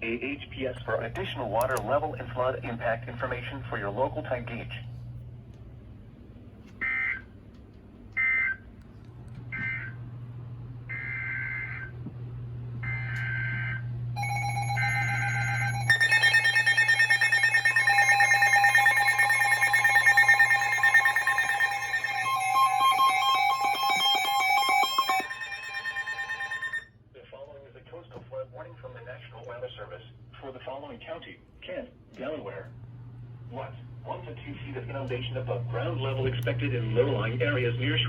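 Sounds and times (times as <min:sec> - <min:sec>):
low hum: 0:07.5 - 0:26.8
screechy data tone bursts: 0:14.2 - 0:26.8
steady multi-tone alert signal: 0:14.2 - 0:26.9.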